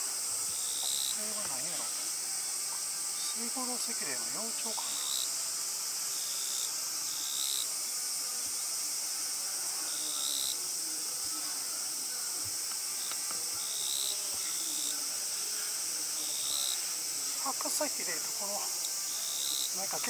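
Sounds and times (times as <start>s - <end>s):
cicadas droning: 0.0s - 20.0s
short insect calls: 0.0s - 20.0s.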